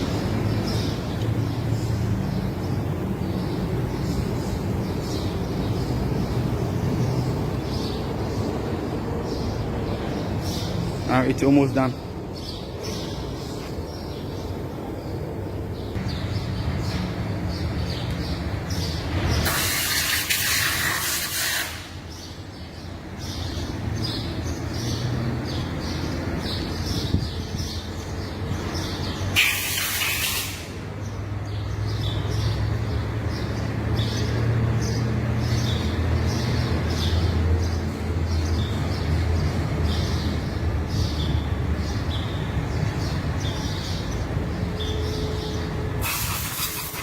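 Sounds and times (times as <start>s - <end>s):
birds chirping: 0.0s - 47.0s
loud hissing bursts: 19.2s - 22.2s, 29.3s - 30.9s, 46.0s - 47.0s.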